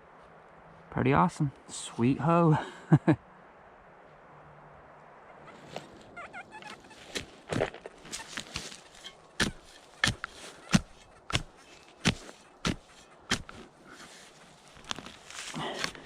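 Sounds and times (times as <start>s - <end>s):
footsteps walking: 6.6s - 16.0s.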